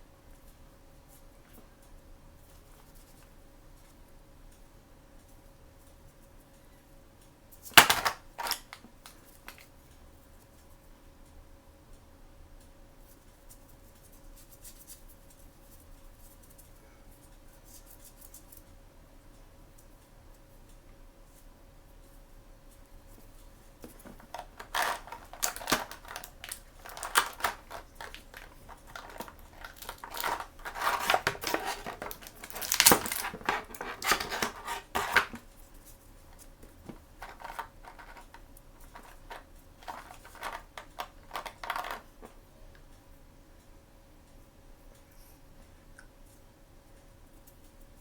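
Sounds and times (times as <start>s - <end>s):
packaging crinkling and tearing: 7.7s - 8.8s, 24.0s - 35.4s, 37.2s - 42.0s.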